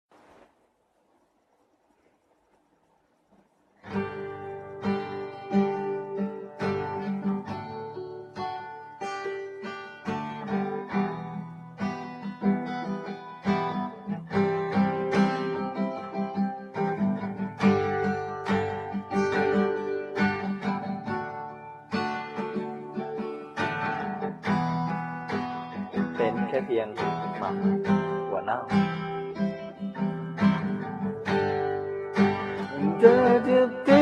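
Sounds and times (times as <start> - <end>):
guitar plucking notes and chords: 3.8 - 34.0.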